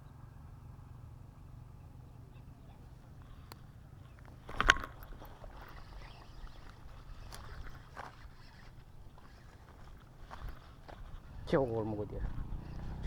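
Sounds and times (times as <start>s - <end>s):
small knocks and rustles: 3.2s - 11.3s.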